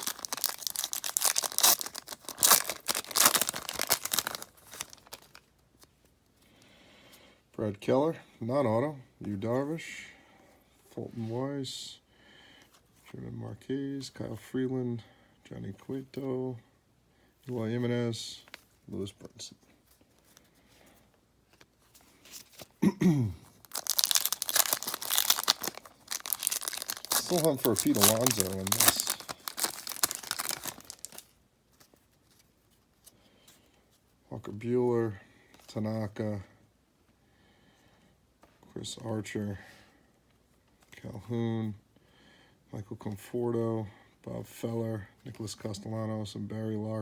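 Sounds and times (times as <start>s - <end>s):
wrapper tearing and crinkling: 0.0s - 5.4s, 23.6s - 31.3s.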